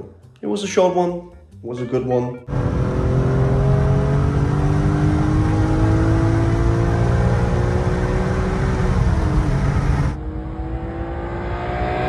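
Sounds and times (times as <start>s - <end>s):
car engine accelerating: 2.5s - 12.0s
road and wind noise: 2.5s - 12.0s.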